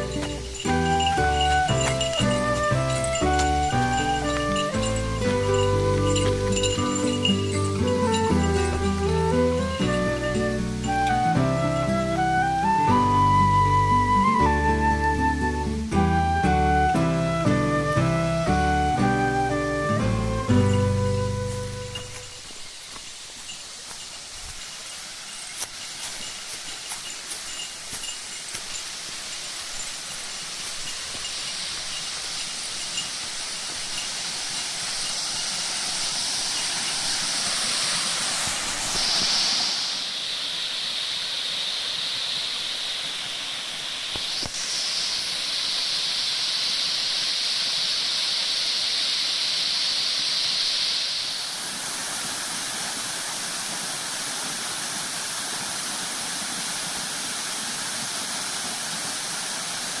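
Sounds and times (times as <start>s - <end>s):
waterfall rushing: 0.0s - 60.0s.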